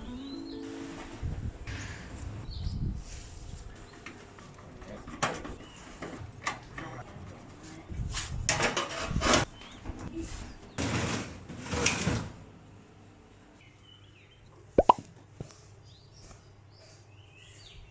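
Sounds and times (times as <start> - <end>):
oven parts knocking and scraping: 3.9 - 7.5, 8.4 - 9.5, 10.7 - 12.4.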